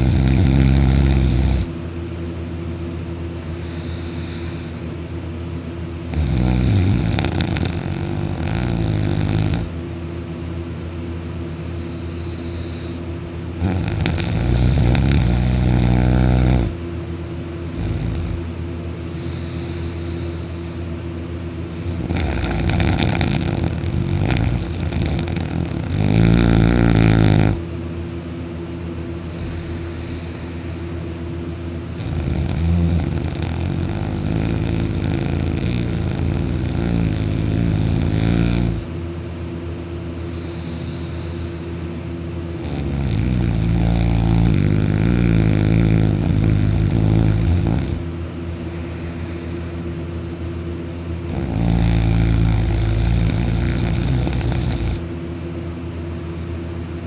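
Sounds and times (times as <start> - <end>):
person snoring loudly: 0.0 - 1.8, 6.0 - 9.8, 13.6 - 16.8, 17.7 - 18.5, 21.7 - 27.6, 31.9 - 39.0, 42.6 - 48.1, 51.2 - 55.1
steady low hum: 0.0 - 57.0.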